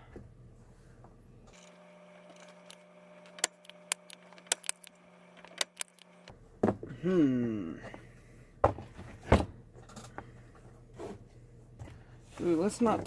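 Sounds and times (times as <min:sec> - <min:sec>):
faint steady hum: 0:00.0 - 0:13.0
small tools clicking and tapping: 0:02.3 - 0:06.1.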